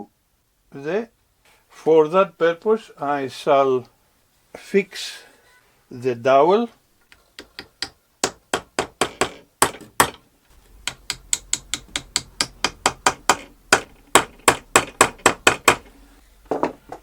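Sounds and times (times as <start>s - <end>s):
hammer tapping wooden dowel: 7.4s - 10.2s, 10.8s - 15.9s.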